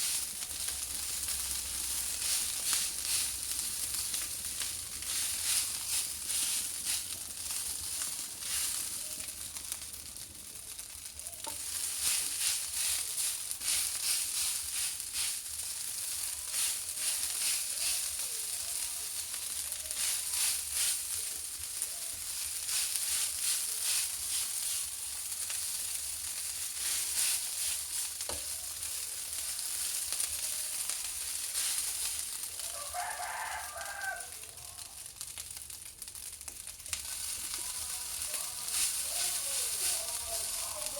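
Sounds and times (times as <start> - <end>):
rice sizzling in a pan: 0.0 - 40.9
spatula tapping and scraping: 2.1 - 9.0, 11.4 - 15.5, 16.1 - 18.2, 19.2 - 21.2, 22.1 - 28.6, 36.9 - 40.9
rooster crowing: 32.6 - 35.0.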